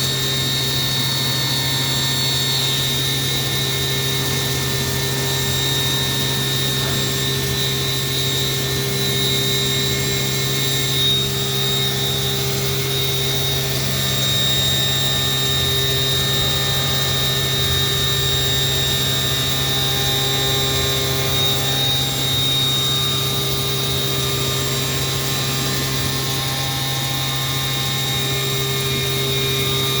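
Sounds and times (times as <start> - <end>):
machine humming: 0.0 - 14.1
high spindle whine: 0.0 - 30.0.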